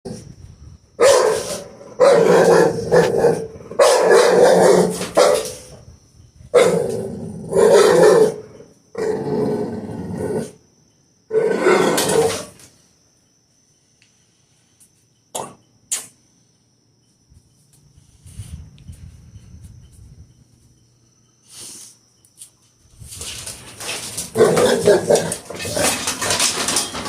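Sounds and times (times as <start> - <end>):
dog barking deeply: 1.0 - 5.7, 6.5 - 8.6.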